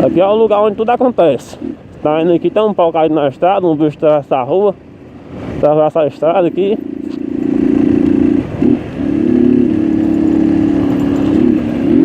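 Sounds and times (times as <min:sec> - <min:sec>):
small motorcycle engine running: 0:06.5 - 0:12.0.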